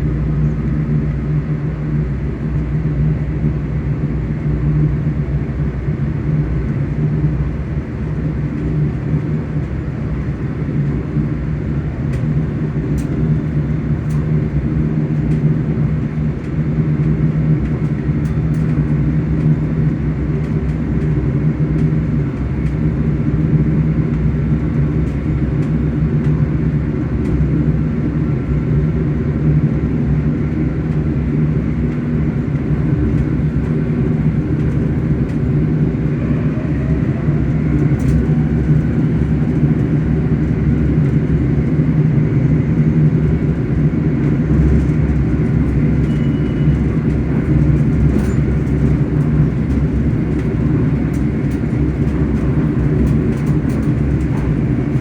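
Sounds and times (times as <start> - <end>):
electric train motors humming: 17.4 - 55.0.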